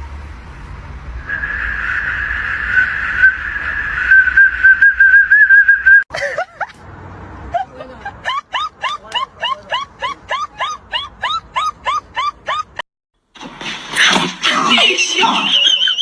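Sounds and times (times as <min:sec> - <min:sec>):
high whistling tone: 0:01.2 - 0:06.0.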